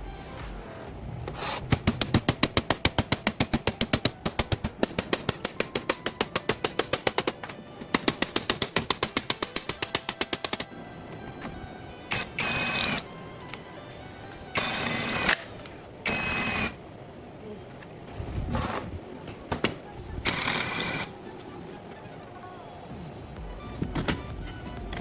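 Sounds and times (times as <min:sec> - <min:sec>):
rapid even knocking: 0:01.3 - 0:10.7
whirring power tool: 0:11.4 - 0:16.8, 0:20.2 - 0:21.1.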